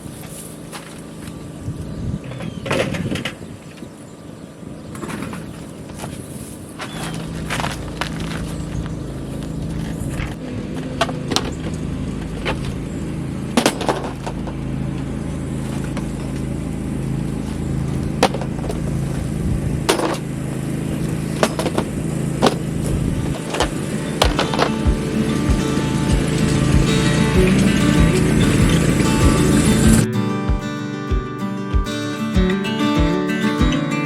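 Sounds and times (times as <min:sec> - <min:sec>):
motor humming: 0:08.6 - 0:30.1
sharp knocks and clatters: 0:23.3 - 0:30.1.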